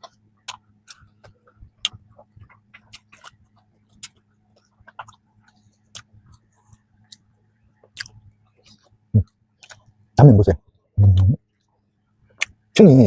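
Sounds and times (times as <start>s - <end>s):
crisp pastry chewing: 0.0s - 10.0s
wet mouth clicks: 4.9s - 7.2s, 8.0s - 9.9s, 11.0s - 11.4s.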